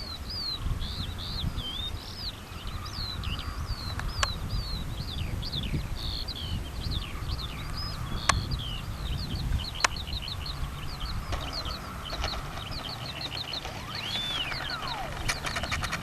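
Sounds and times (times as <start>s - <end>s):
small songbirds chirping: 0.0s - 16.0s
sharp clicks: 11.3s - 16.0s.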